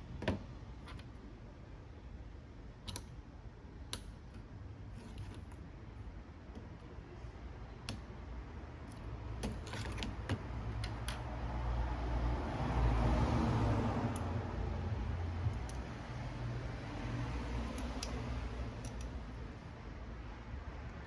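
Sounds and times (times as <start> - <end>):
repair tools clicking and tapping: 17.5 - 19.4.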